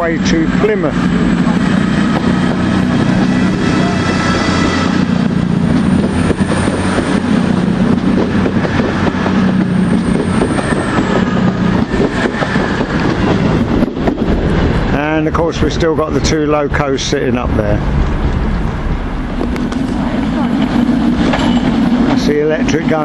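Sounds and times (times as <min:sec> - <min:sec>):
diesel train engines running: 0:00.0 - 0:23.0
wheels clicking over rail joints: 0:05.4 - 0:14.9.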